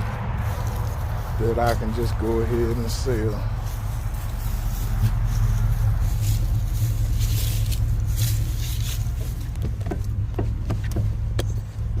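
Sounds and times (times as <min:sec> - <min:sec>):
tractor engine idling: 0:00.0 - 0:12.0
short knocks: 0:09.2 - 0:11.7.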